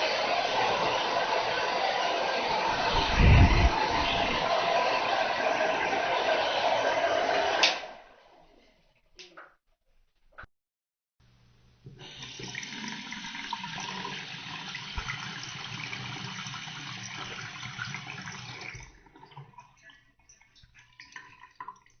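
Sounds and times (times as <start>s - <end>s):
water dripping and trickling: 12.2s - 22.0s
tap running into sink: 14.9s - 15.4s.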